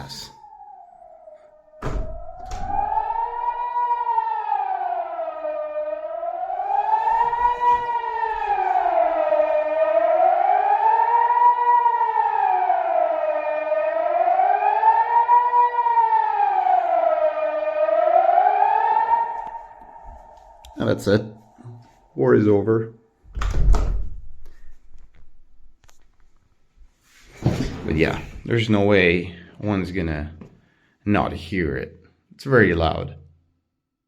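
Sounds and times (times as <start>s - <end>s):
civil defence siren wailing: 0.0s - 22.4s.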